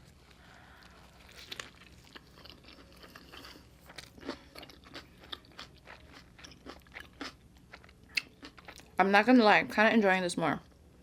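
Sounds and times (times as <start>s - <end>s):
chewing with soft crunches: 0.0s - 9.0s.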